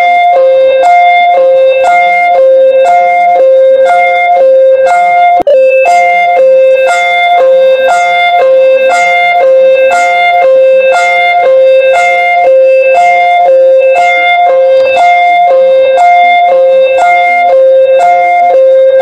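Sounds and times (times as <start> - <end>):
synthesized emergency alert tone: 0.0 - 19.0.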